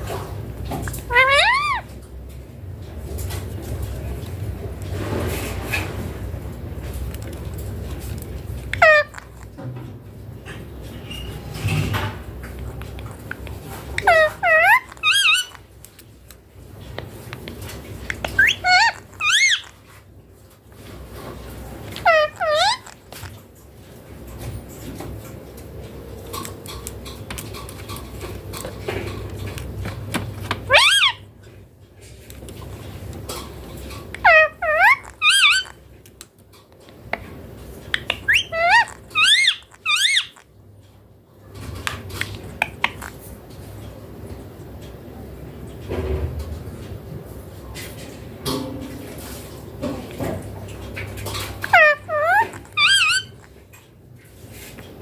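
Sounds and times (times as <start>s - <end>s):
parakeet calls: 0.8s - 2.0s, 8.6s - 9.6s, 13.9s - 15.7s, 18.1s - 19.9s, 21.9s - 23.3s, 30.5s - 31.3s, 34.2s - 35.8s, 37.9s - 40.6s, 42.1s - 43.2s, 51.4s - 53.6s.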